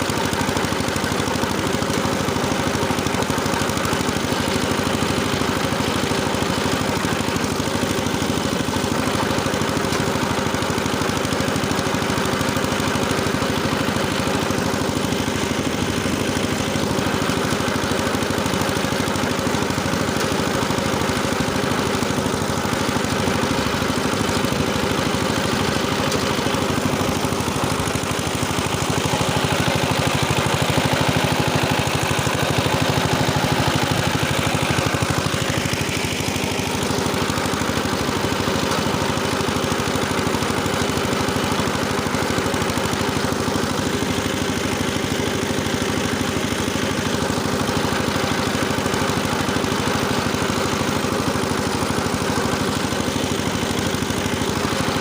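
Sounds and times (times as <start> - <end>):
rotary tiller engine running: 0.0 - 55.0.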